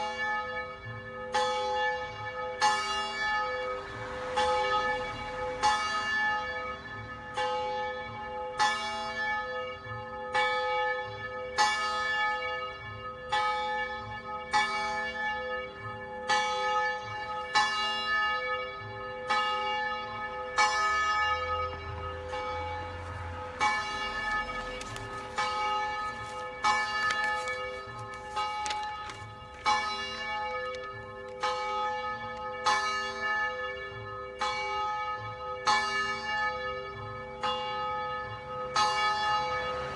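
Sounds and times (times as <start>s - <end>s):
church bell tolling: 0.0s - 39.9s.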